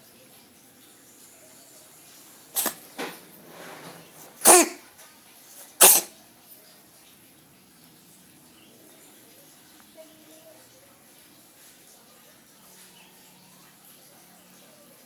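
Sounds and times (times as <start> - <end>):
cat coughing: 2.6 - 4.8, 5.8 - 6.1.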